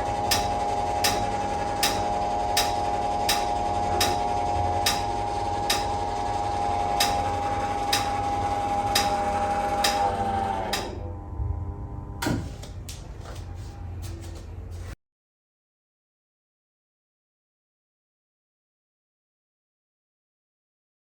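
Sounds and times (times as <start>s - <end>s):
treadmill motor whine: 0.0s - 15.0s.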